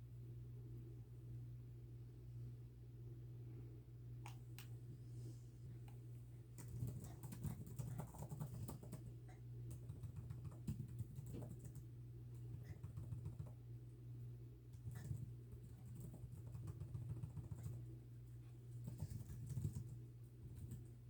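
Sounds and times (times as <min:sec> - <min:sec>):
steady low hum: 0:00.0 - 0:21.0
keyboard typing: 0:06.6 - 0:09.1, 0:09.7 - 0:11.9, 0:12.5 - 0:13.6, 0:14.9 - 0:17.8, 0:18.8 - 0:20.0.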